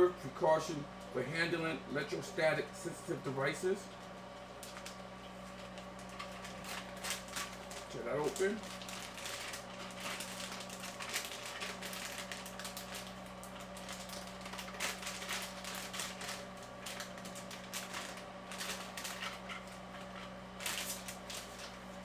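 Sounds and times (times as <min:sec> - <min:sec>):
extractor fan humming: 0:00.0 - 0:22.0
plastic bag crinkling: 0:04.6 - 0:22.0.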